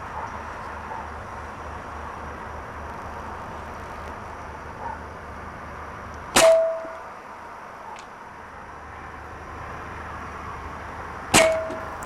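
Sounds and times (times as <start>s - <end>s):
air rifle shot: 6.4s - 6.9s, 11.3s - 11.8s
metallic ringing tone: 6.4s - 7.1s, 11.4s - 12.0s.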